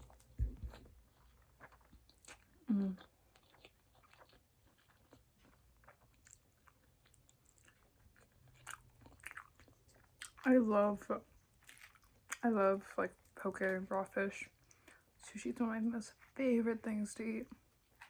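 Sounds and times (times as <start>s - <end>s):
wet chewing: 0.0s - 10.5s.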